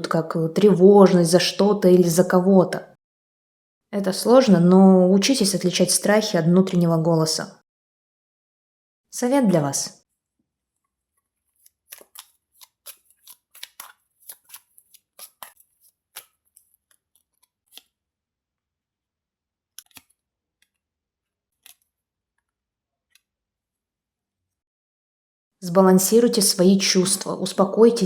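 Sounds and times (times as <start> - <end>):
cards shuffling: 11.5 - 18.0, 19.8 - 20.2.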